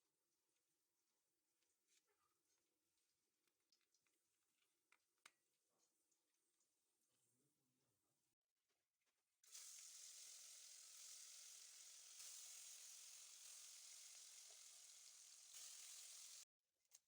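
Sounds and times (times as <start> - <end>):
fish sizzling in hot oil: 9.4 - 16.4.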